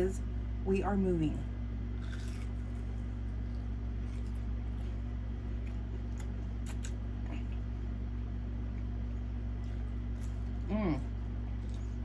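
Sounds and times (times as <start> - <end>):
steady low hum: 0.0 - 12.0
faint chewing: 2.0 - 7.7, 8.6 - 12.0.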